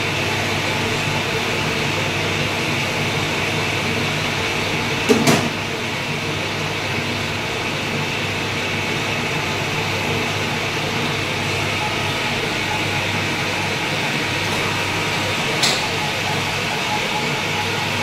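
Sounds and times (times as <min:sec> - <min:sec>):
lathe running: 0:05.8 - 0:18.0.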